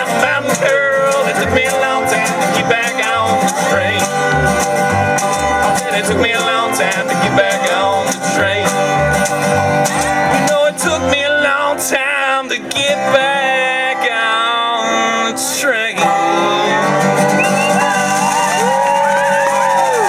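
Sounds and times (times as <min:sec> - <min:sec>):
live country-rock band playing: 0:00.0 - 0:20.0
crowd whooping: 0:17.2 - 0:20.0.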